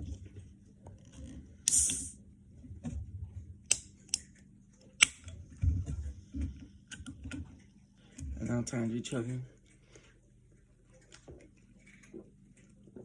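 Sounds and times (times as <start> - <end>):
can opening with hiss: 1.7 - 2.1.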